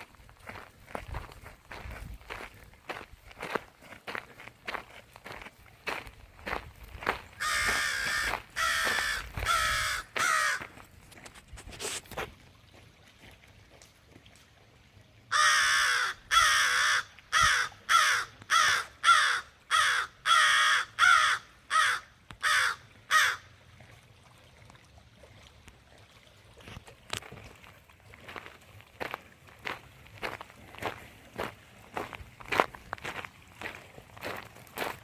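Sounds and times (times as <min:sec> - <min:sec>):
crow cawing: 0:07.4 - 0:10.7, 0:15.3 - 0:23.4.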